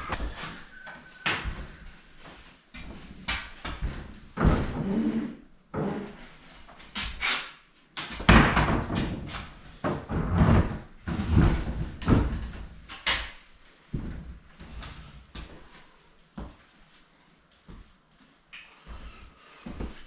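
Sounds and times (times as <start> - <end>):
clutter banging and clattering: 8.2 - 13.2.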